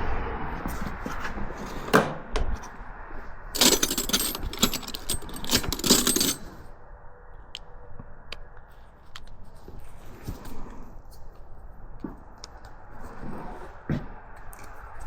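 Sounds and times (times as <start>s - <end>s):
small metal parts clinking: 3.6s - 6.5s.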